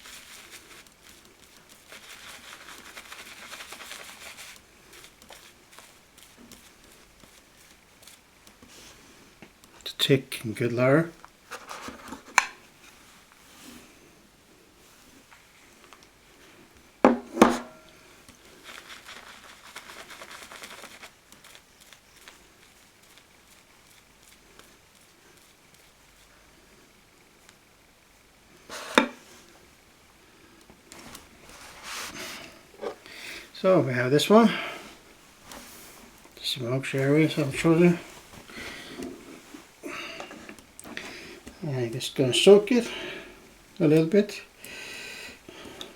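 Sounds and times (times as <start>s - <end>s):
shaving brush in lather: 0.0s - 8.6s, 18.3s - 27.6s, 35.5s - 39.8s, 41.3s - 43.0s, 43.8s - 44.5s
brush knocking against mug: 17.1s - 17.8s.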